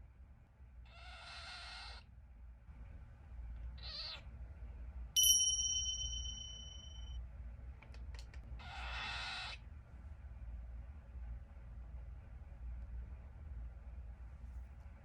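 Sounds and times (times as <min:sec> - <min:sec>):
bright ringing ding: 0:05.2 - 0:07.1
cockatiel call: 0:08.6 - 0:09.6.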